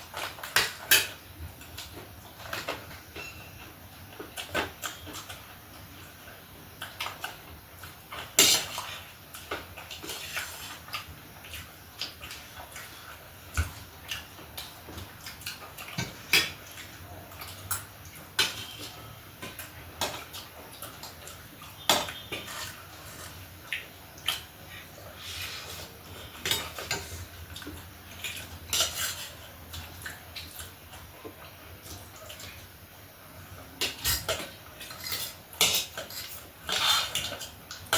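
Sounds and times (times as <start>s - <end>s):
cutlery clinking on dishes: 2.5s - 3.6s, 28.2s - 29.4s, 33.8s - 37.5s.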